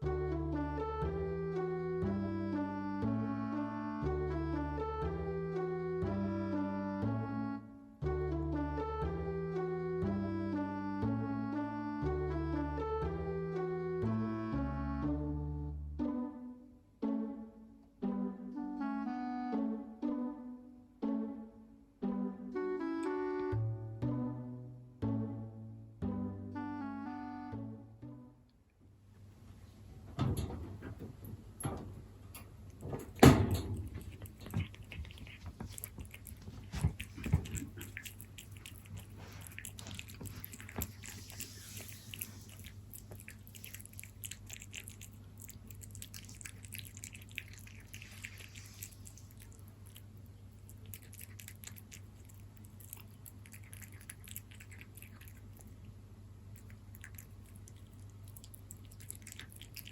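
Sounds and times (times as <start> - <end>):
cat chewing and lapping food: 29.4 - 59.9.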